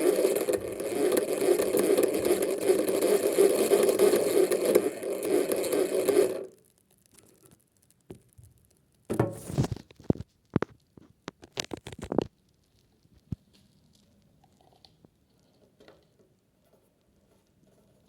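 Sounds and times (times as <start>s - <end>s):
toy washing machine motor running: 0.0s - 6.5s
clicks and knocks: 9.1s - 10.7s.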